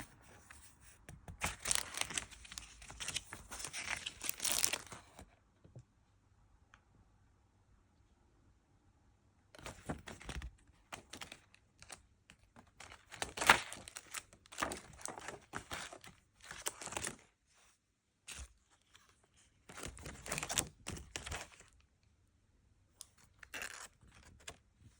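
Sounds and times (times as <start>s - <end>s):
packaging crinkling and tearing: 1.4s - 5.2s, 12.8s - 17.2s, 19.7s - 21.8s, 23.4s - 24.5s.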